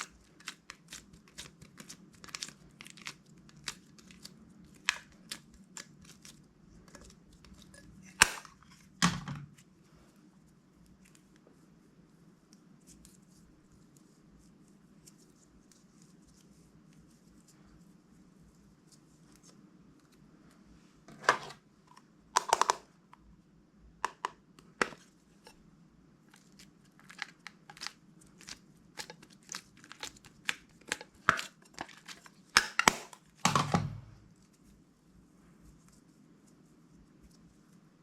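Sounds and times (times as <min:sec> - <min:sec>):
slime squishing: 0:00.0 - 0:09.8, 0:26.2 - 0:33.4.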